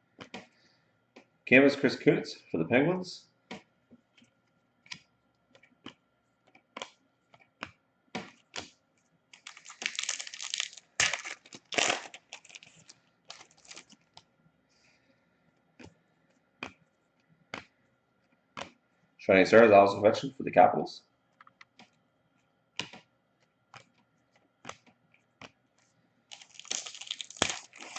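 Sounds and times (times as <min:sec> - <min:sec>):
cards clicking and snapping: 0:24.6 - 0:25.6.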